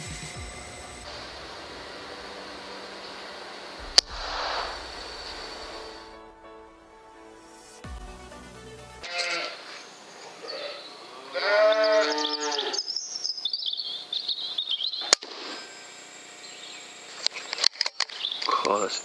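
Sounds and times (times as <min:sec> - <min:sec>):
pigs squealing: 0:09.0 - 0:13.0.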